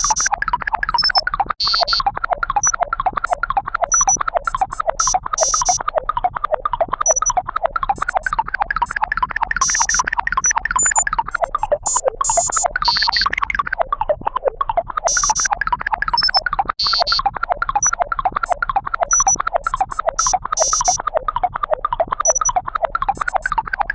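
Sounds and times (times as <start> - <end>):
high-pitched chirps: 0.9 - 1.2, 2.6 - 5.8, 7.1 - 9.0, 9.6 - 13.3, 16.1 - 17.2, 17.8 - 21.0, 22.2 - 23.6
electronic blips: 0.9 - 5.8, 7.0 - 9.0, 9.6 - 13.6, 15.1 - 21.0, 22.2 - 23.7.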